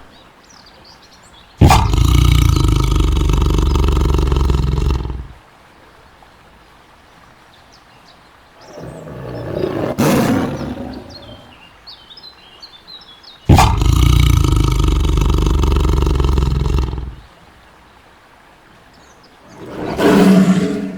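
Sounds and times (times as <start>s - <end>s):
tiger roaring: 1.6s - 5.4s, 8.6s - 11.6s, 13.5s - 17.3s, 19.5s - 20.9s.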